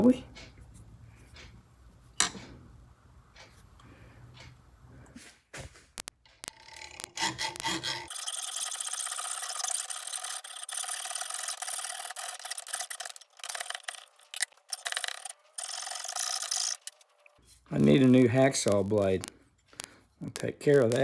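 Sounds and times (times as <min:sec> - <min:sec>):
hacksaw sawing: 0:06.4 - 0:17.4.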